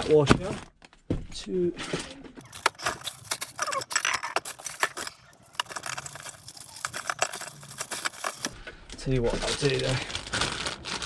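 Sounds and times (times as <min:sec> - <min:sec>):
small metal parts rattling: 0:02.4 - 0:08.6.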